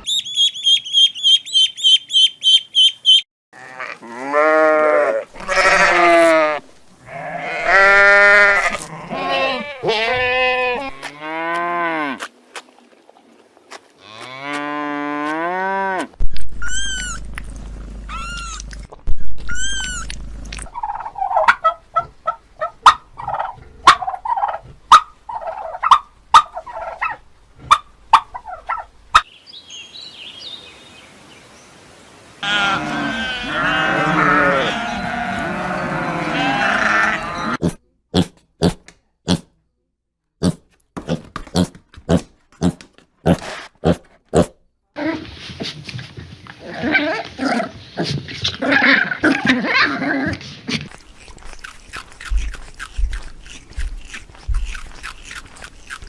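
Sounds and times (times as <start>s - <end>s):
farm animals calling: 0.0s - 12.2s, 20.7s - 29.3s, 32.4s - 37.7s, 46.6s - 56.0s
chorus of many animals: 0.0s - 31.7s, 32.4s - 37.6s, 45.0s - 56.0s.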